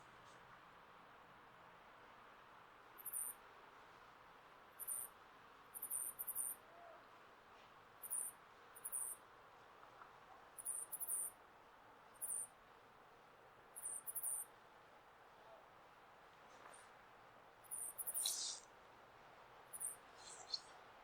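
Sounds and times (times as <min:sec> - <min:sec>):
flying squirrel high-pitched squeaks: 0:03.0 - 0:03.4, 0:08.0 - 0:09.2, 0:10.6 - 0:11.3, 0:13.8 - 0:14.4, 0:17.6 - 0:18.7, 0:19.7 - 0:20.7.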